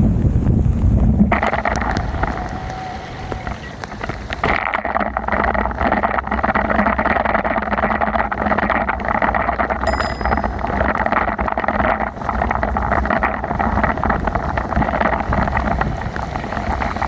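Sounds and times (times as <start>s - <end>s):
wind rumbling on microphone: 0.0s - 17.0s
tyres hissing on wet road: 13.0s - 17.0s.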